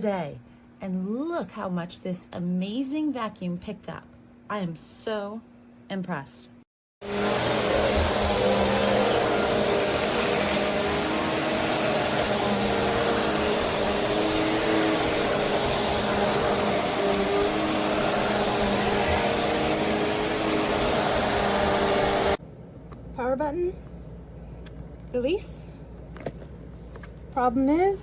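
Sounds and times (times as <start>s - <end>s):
vacuum cleaner running: 7.0s - 22.4s.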